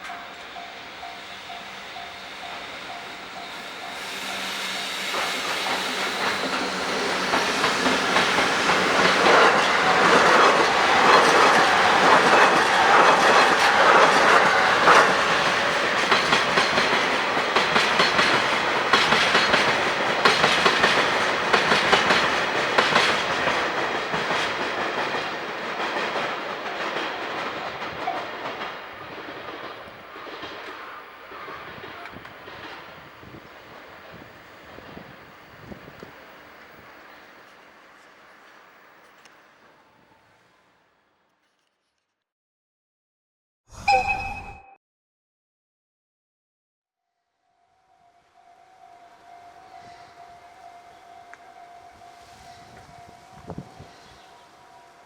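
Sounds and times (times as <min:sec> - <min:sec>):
train wheels clacking on rails: 0:00.0 - 0:37.6.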